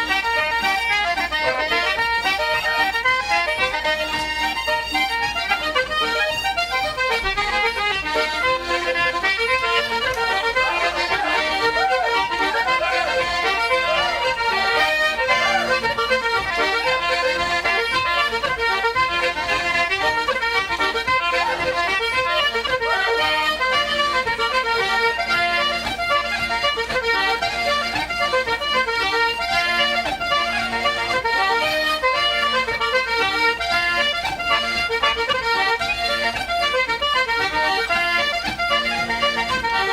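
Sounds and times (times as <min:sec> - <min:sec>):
accordion and concertina dance tune: 0:00.0 - 0:39.9.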